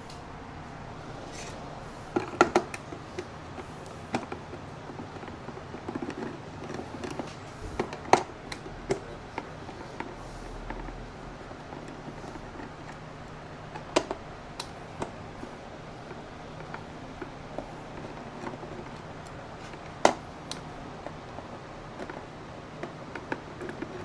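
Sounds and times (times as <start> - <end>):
plastic clicks and knocks: 2.2 - 10.1.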